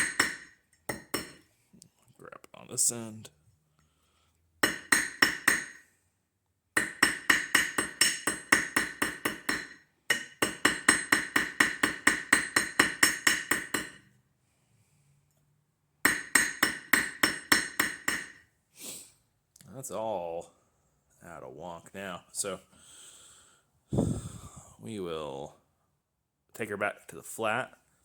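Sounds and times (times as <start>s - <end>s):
hammer striking ring on anvil: 0.0s - 1.4s, 4.6s - 5.8s, 6.8s - 14.1s, 16.0s - 18.4s.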